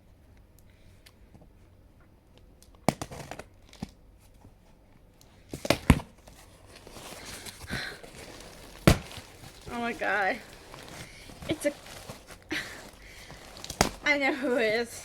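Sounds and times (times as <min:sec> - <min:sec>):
packaging rustling: 0:05.6 - 0:15.0
packaging tearing and crinkling: 0:06.4 - 0:14.2.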